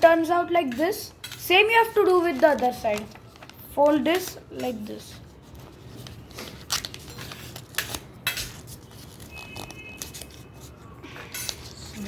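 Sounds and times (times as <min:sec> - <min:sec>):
paper being folded and creased: 0:02.2 - 0:12.0.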